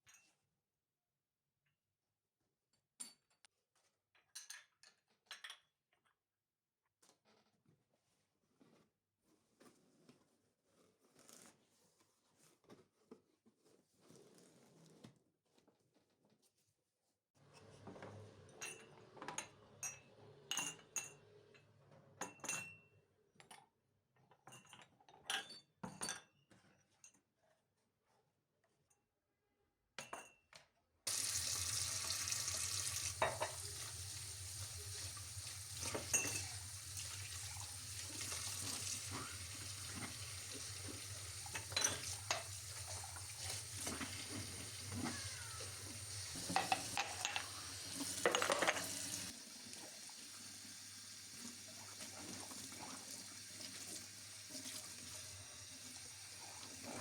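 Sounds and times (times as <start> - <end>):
dishes and cutlery clinking: 17.5 - 21.4, 33.0 - 49.3.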